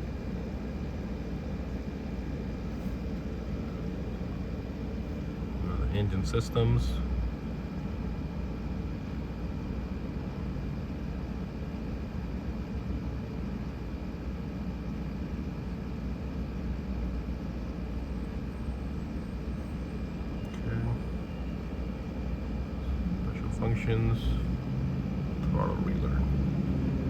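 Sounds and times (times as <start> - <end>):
low rumbling background noise: 0.0 - 27.0
faint steady high tone: 18.0 - 21.9.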